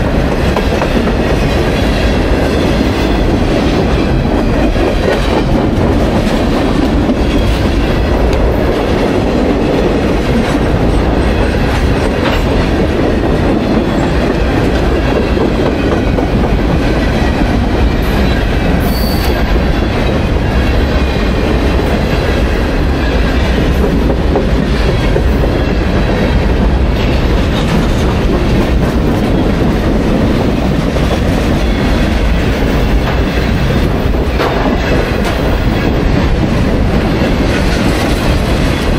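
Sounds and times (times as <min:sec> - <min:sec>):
train wheels on rails: 0:00.0 - 0:38.9
faint high wheel squeal: 0:18.2 - 0:19.5.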